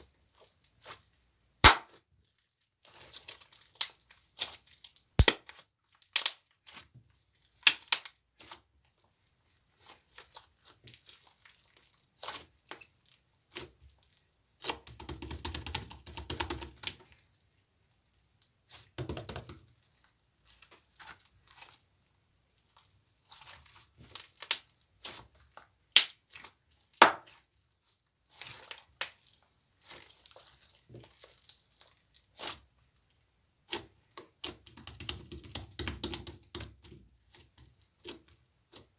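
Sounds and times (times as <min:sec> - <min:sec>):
rustling or crinkling: 0:02.2 - 0:14.6, 0:16.9 - 0:34.8.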